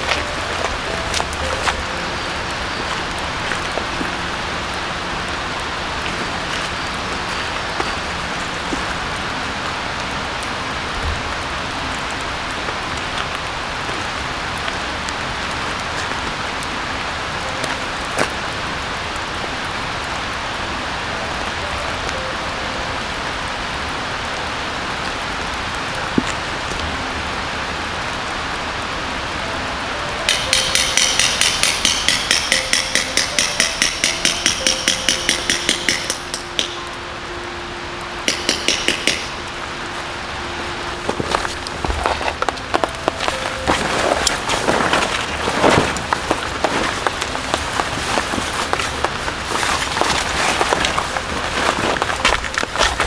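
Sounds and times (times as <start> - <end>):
rain falling in forest: 0.0 - 53.0
sharp metallic taps: 30.3 - 36.9, 38.3 - 39.6.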